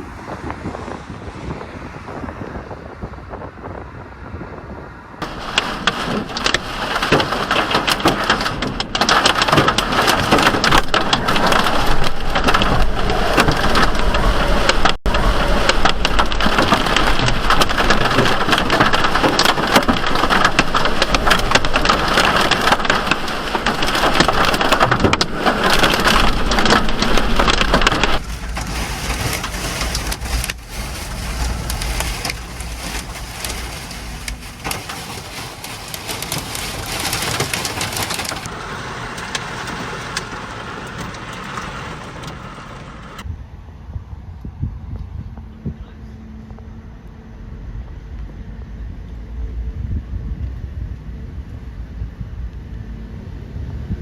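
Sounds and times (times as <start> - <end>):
heavy rain and hail pelting: 5.2 - 43.3
low rumble: 5.2 - 54.0.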